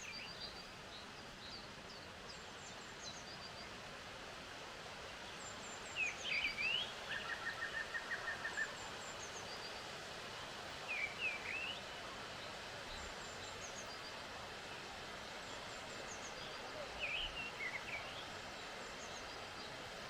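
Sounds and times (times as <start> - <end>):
steady background hiss: 0.0 - 20.0.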